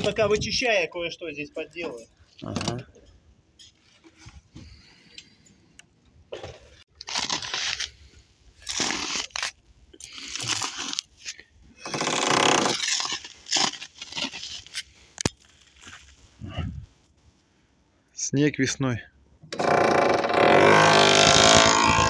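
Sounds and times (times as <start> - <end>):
power tool running: 19.5 - 22.0.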